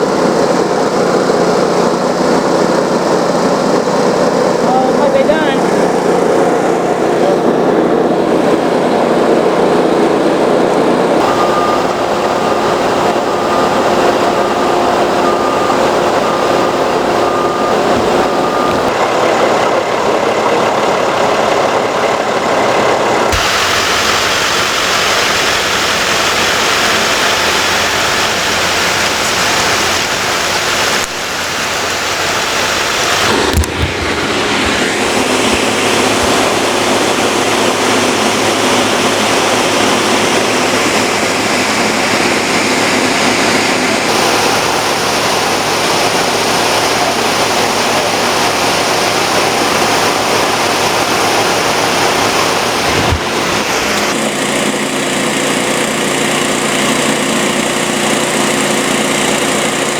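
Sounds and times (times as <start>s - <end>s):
fire engine droning: 0.0s - 59.9s
short electronic beeps: 11.2s - 18.9s.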